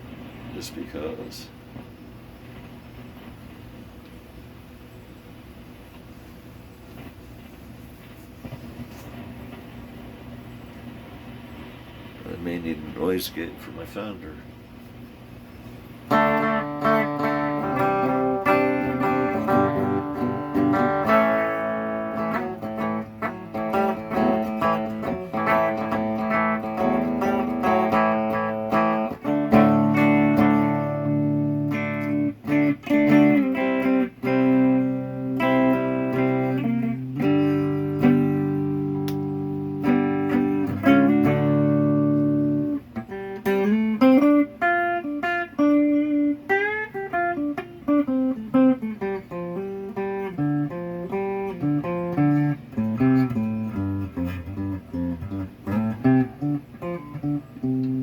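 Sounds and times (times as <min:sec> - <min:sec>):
electric guitar through amplifiers: 0:06.9 - 0:58.0.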